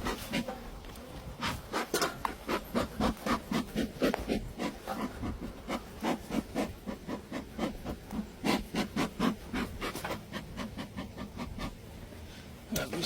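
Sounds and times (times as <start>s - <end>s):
rhythmic scraping strokes: 1.4s - 11.8s.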